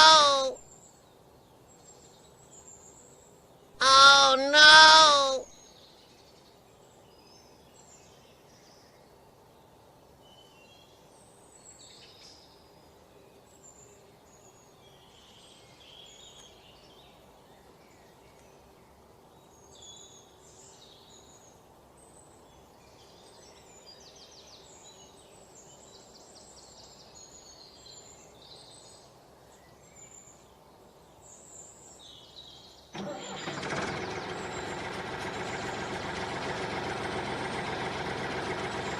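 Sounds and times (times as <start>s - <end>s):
faint background hiss: 0.0s - 33.5s
small birds chirping: 13.4s - 38.9s.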